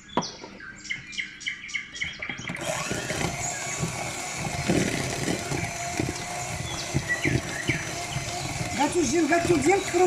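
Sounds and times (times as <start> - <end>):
birds chirping: 0.0 - 10.0
electric hand mixer running: 2.5 - 10.0.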